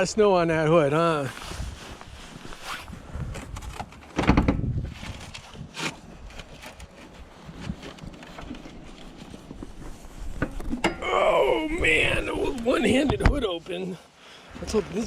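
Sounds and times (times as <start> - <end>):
snow crunching: 1.0 - 2.9.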